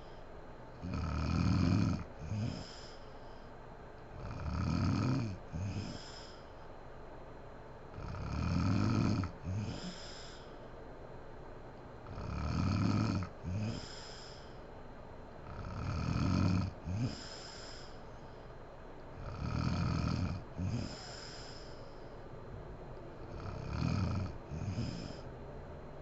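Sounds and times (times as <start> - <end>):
woman snoring: 0.8 - 3.0, 4.2 - 6.3, 8.0 - 10.4, 12.1 - 14.4, 15.5 - 18.0, 19.2 - 21.8, 23.3 - 25.2
breathy exhale: 2.2 - 3.5, 5.6 - 6.7, 9.5 - 10.7, 13.6 - 14.7, 16.9 - 18.6, 20.6 - 22.2, 24.6 - 25.3.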